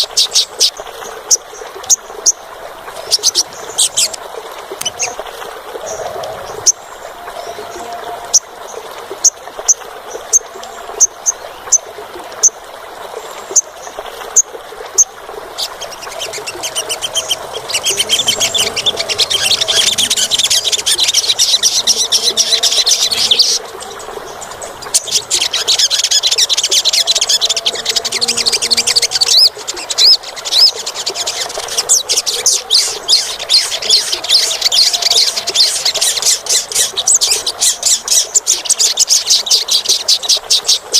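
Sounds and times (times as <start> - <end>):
shrill bird trilling song: 15.8 - 23.6, 24.4 - 40.8.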